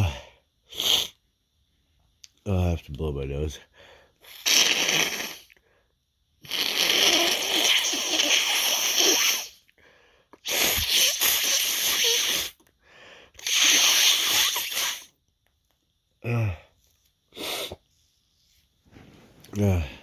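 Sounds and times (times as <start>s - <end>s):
person blowing nose: 0.7s - 1.2s, 4.2s - 5.6s, 6.4s - 9.7s, 10.4s - 12.6s, 13.4s - 15.2s, 17.3s - 17.8s.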